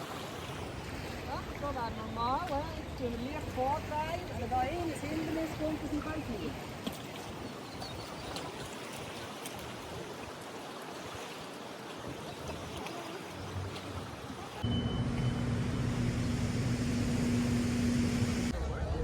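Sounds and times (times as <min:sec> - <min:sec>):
river water flowing: 0:00.0 - 0:18.6
low mechanical hum: 0:14.6 - 0:18.6.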